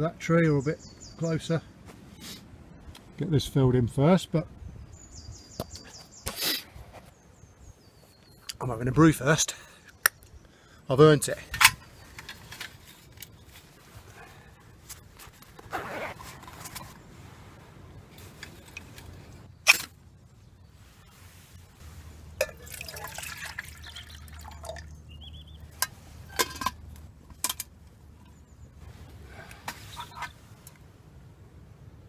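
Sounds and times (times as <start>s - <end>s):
camping kit clinking and knocking: 11.2s - 14.0s, 14.8s - 17.1s, 18.1s - 20.0s, 22.3s - 24.9s, 25.5s - 28.5s, 29.3s - 30.8s
water pouring and dripping: 21.9s - 26.7s.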